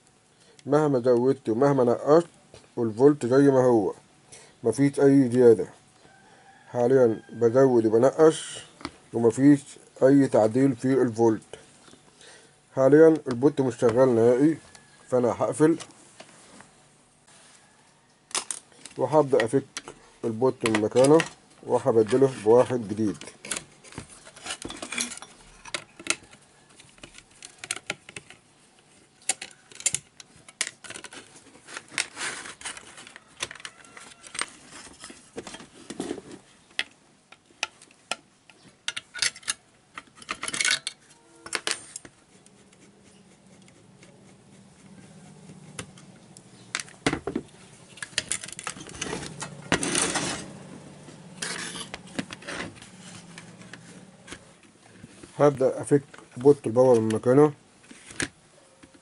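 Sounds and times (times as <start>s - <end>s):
metal tools clinking on workbench: 24.4s - 25.9s, 40.2s - 42.0s
low steady hum: 34.3s - 58.4s.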